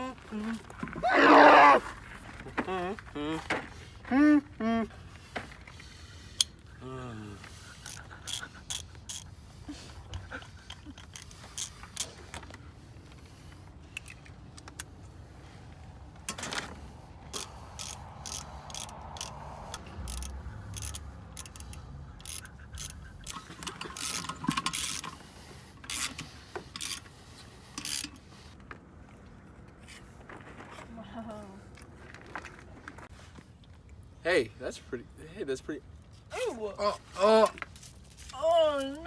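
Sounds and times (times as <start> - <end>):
metal hand tools ratcheting: 7.8 - 9.3, 10.1 - 12.4, 17.3 - 27.1, 27.7 - 28.2.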